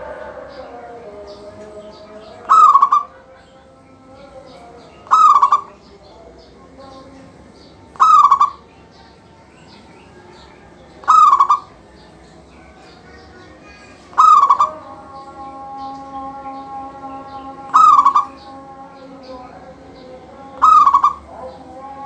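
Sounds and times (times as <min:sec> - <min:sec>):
dove cooing: 0:00.0 - 0:05.9, 0:07.4 - 0:08.7, 0:11.0 - 0:12.0, 0:14.0 - 0:18.8, 0:19.7 - 0:22.0
small birds chirping faintly: 0:00.0 - 0:22.0.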